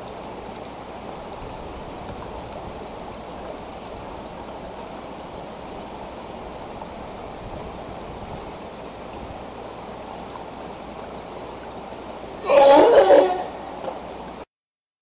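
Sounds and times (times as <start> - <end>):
running water rushing: 0.0 - 14.5
animal call: 12.4 - 13.9.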